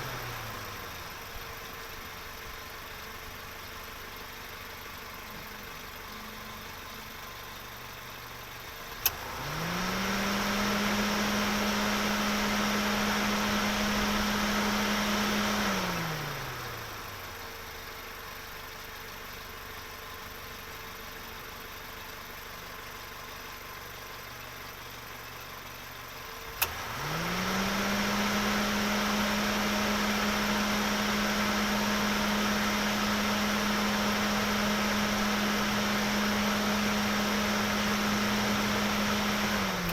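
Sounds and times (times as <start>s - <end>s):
car engine revving: 9.0s - 17.1s, 26.6s - 39.9s.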